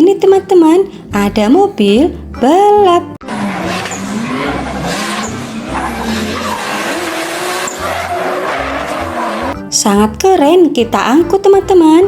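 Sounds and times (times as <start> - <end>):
race car engine running: 3.2 - 9.6
tyre squeal and skidding: 3.2 - 9.6.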